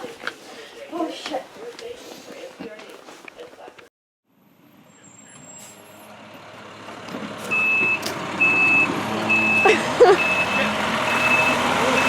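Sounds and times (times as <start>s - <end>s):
vehicle engine running: 5.8s - 12.0s
reversing alarm beeping: 7.5s - 12.0s.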